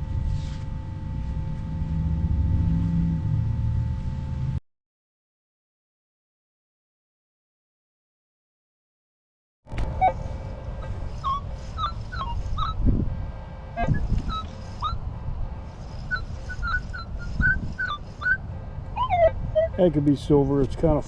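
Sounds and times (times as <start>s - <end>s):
low rumble: 0.0s - 4.6s, 9.7s - 19.7s
metal detector chirping tones: 9.7s - 12.8s, 13.8s - 15.0s, 15.8s - 18.4s, 19.0s - 19.8s.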